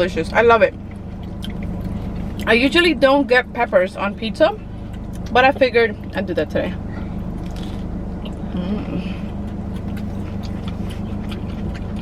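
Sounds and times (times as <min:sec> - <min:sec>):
car engine idling inside cabin: 0:00.0 - 0:12.0
person chewing: 0:00.8 - 0:02.5, 0:04.7 - 0:05.4, 0:07.0 - 0:12.0.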